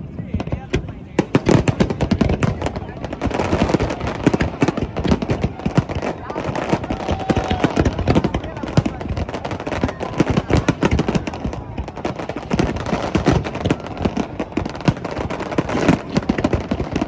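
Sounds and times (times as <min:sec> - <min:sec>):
fireworks bangs and pops: 0:00.0 - 0:17.0.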